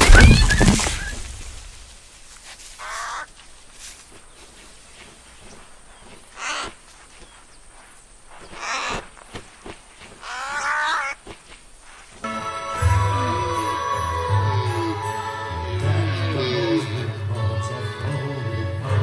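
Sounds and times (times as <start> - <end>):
harsh animal calls: 0.0 - 1.3, 2.8 - 3.3, 6.0 - 7.0, 8.3 - 9.3, 10.1 - 11.2
loud thud: 0.0 - 1.9.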